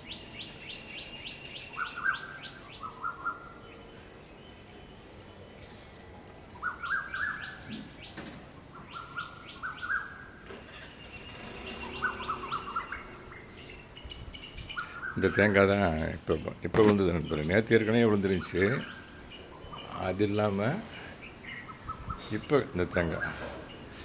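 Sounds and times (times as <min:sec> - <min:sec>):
bird rising whistled calls: 0:11.1 - 0:15.2
bird sharp high notes: 0:11.2 - 0:13.8.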